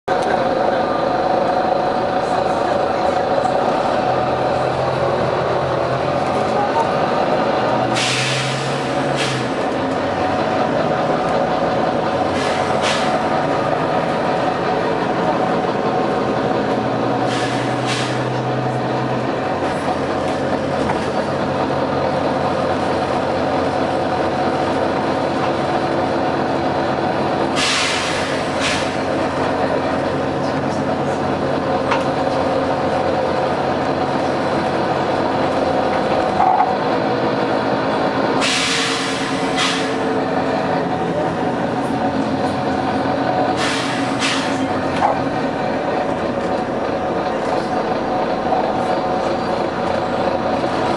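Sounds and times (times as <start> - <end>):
diesel bus engine humming: 0.0 - 50.9
compressed air hissing: 38.4 - 40.0, 43.6 - 44.6.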